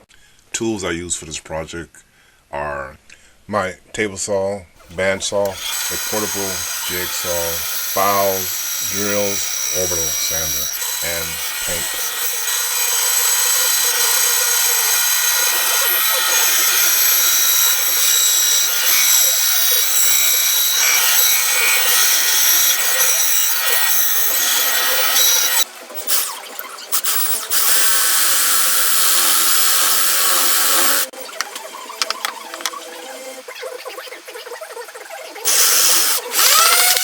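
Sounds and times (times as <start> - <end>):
power tool whining: 4.8 - 32.8, 35.4 - 37.0.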